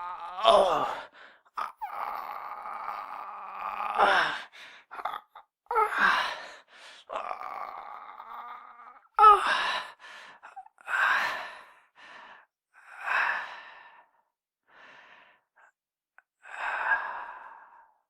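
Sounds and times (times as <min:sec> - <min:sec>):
person crying out in pain: 0:00.0 - 0:01.0.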